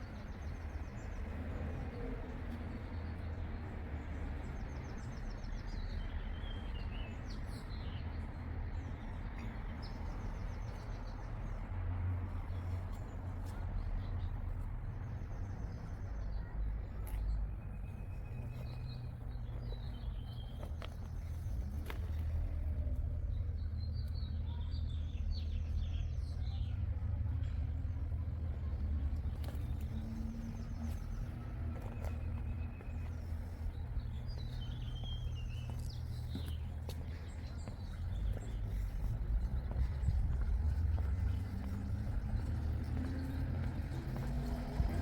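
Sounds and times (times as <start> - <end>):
low outdoor rumble: 11.2 - 45.0
small birds chirping: 12.4 - 45.0.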